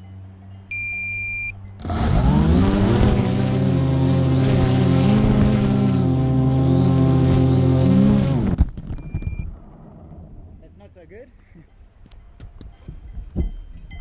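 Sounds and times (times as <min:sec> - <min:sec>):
short electronic beep: 0:00.7 - 0:01.6, 0:09.0 - 0:09.5
motor running high: 0:01.8 - 0:08.6.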